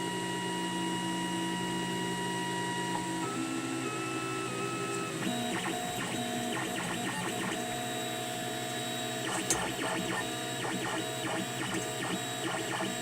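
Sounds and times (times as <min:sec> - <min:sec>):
stepper motors whining: 0:04.1 - 0:13.0
sharp click: 0:09.3 - 0:10.0.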